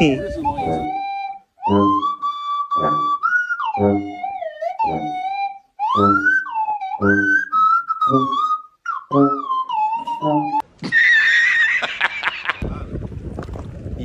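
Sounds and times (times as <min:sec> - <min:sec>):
low pulsing beat: 0:00.0 - 0:00.9
whistle-like lead melody: 0:00.0 - 0:10.6.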